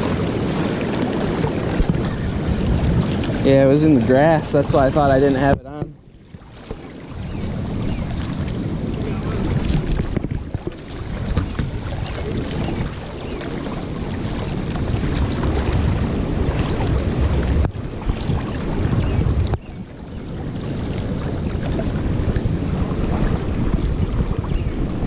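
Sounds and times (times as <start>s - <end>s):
river water rushing: 0.0s - 5.4s
wind buffeting microphone: 0.0s - 25.0s.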